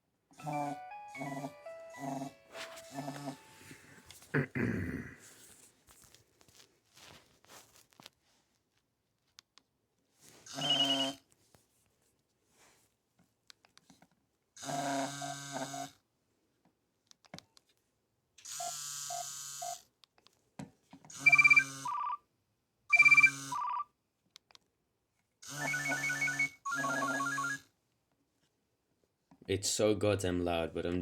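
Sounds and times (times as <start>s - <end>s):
polyphonic ringtone snippets: 0.4s - 4.2s, 21.2s - 22.2s, 22.9s - 23.8s, 25.6s - 27.6s.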